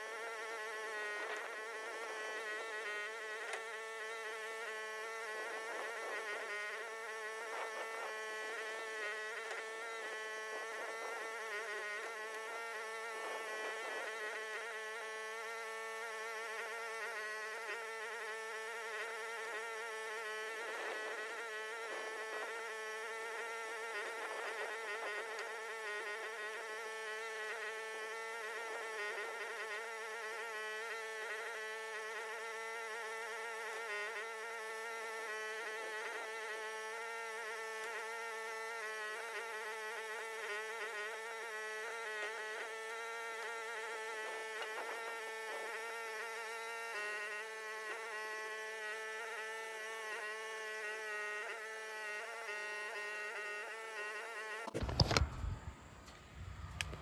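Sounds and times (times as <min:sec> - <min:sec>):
excavator engine running: 0:54.7 - 0:57.0.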